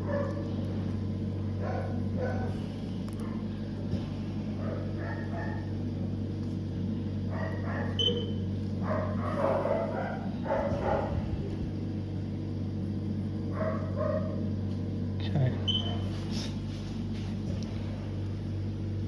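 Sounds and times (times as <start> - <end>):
dog barking muffled: 0.0 - 0.6, 1.5 - 3.6, 4.5 - 5.8, 7.2 - 11.5, 13.5 - 14.5, 15.6 - 16.3
low electrical hum: 0.0 - 19.0.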